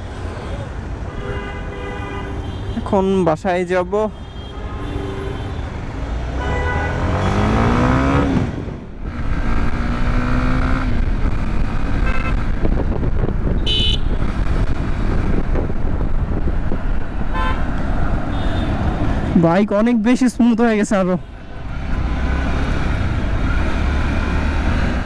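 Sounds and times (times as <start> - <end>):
road and wind noise: 0.0 - 25.0
motorcycle engine revving: 6.0 - 12.9, 21.7 - 25.0.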